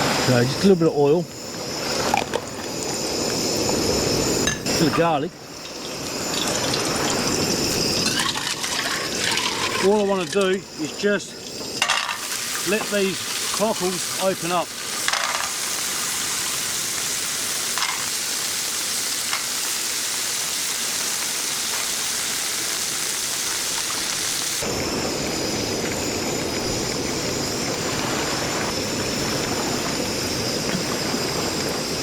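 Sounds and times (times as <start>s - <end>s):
shellfish sizzling in a frying pan: 5.8s - 10.4s, 11.6s - 24.7s.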